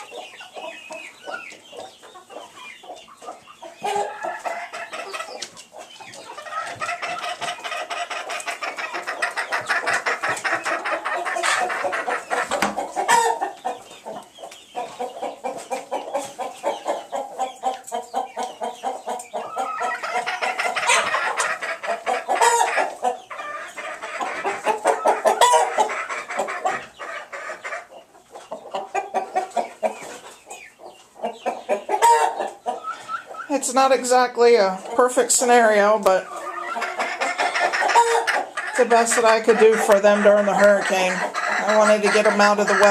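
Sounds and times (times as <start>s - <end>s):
chickens clucking: 0.0s - 42.9s.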